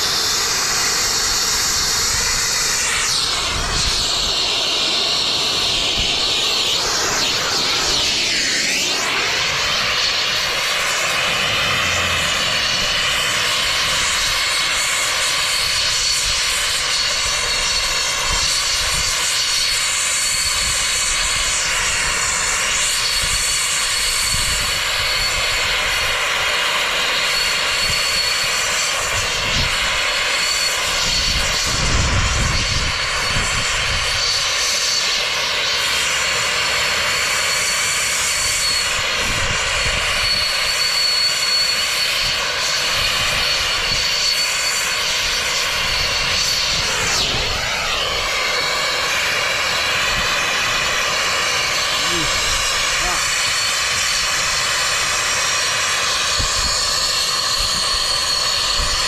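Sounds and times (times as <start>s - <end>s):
soldering torch roaring: 0.0s - 59.0s
thin high whistle: 27.2s - 29.7s, 30.3s - 31.8s, 37.3s - 50.3s.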